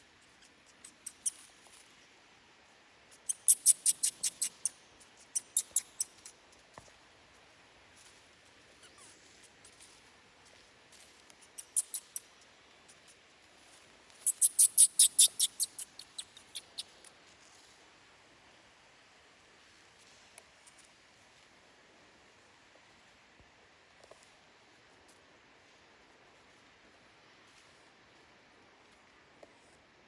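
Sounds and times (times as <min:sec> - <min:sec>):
baby monkey squeaking: 0:00.8 - 0:01.5, 0:03.2 - 0:04.8, 0:05.4 - 0:06.3, 0:11.5 - 0:12.2, 0:14.2 - 0:17.0.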